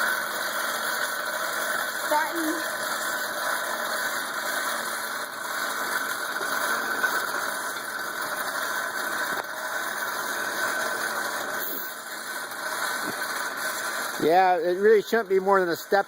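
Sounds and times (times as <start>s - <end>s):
hand-cranked forge blower whirring: 0.0s - 16.0s.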